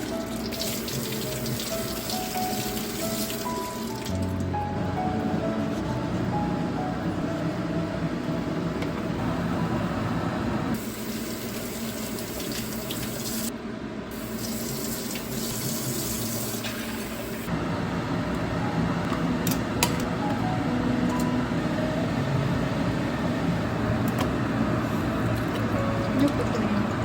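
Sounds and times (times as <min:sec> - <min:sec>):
tap water running into sink: 0:00.0 - 0:04.4, 0:11.0 - 0:13.5, 0:14.3 - 0:17.3.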